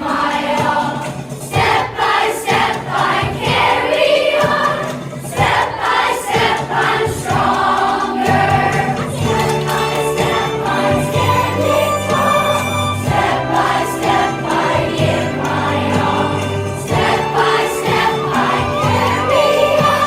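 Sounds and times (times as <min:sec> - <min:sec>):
choir singing: 0:00.0 - 0:20.0.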